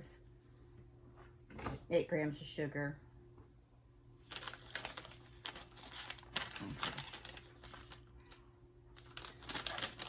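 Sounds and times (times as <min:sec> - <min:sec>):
plastic snack pouch crinkling: 0:04.2 - 0:10.0.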